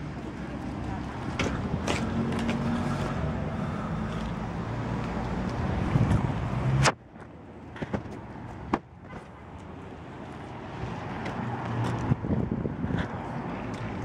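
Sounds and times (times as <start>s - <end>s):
vehicle engine rumbling: 0.0s - 10.2s.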